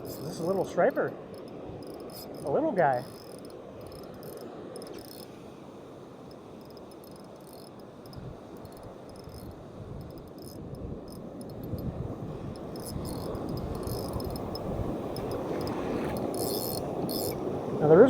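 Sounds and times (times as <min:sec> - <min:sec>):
fishing reel ticking: 0:00.0 - 0:05.3, 0:06.2 - 0:11.9, 0:12.5 - 0:17.4
surf rushing: 0:11.6 - 0:18.0.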